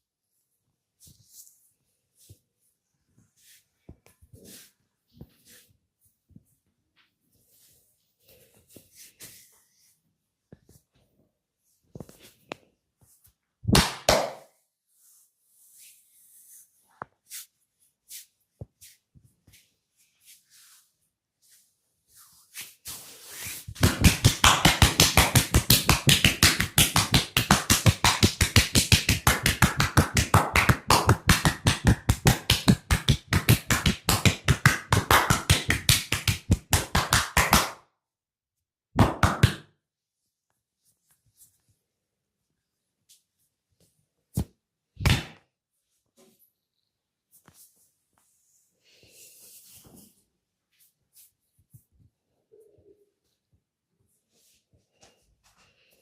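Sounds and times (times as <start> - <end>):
hands slapping body: 13.7 - 14.5, 23.6 - 37.8, 39.0 - 39.7, 44.4 - 45.4
soft rubbing: 14.9 - 24.0.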